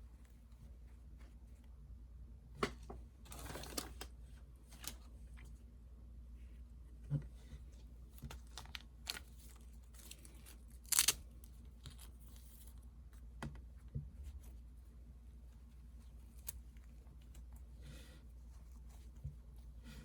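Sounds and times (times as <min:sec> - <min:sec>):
packaging tearing: 0:08.4 - 0:11.4.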